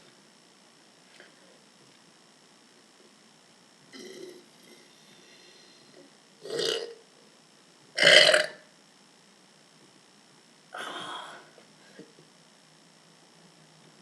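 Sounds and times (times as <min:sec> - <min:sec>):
person burping: 0:03.9 - 0:04.4, 0:06.4 - 0:07.0, 0:08.0 - 0:08.6, 0:10.8 - 0:11.5.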